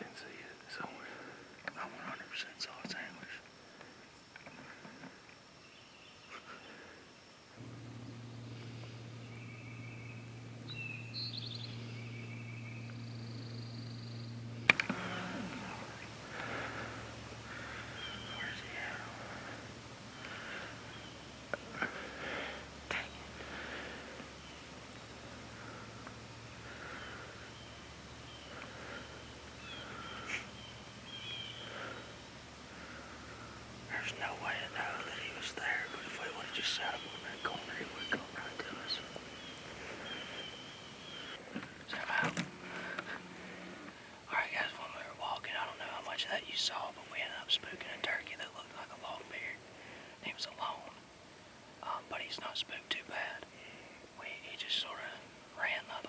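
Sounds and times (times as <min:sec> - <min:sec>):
steady low hum: 0:06.5 - 0:56.0
birds chirping and trilling: 0:07.6 - 0:43.6, 0:44.3 - 0:49.5, 0:50.2 - 0:50.9, 0:54.2 - 0:56.0
songbirds singing high whistles: 0:08.0 - 0:41.4.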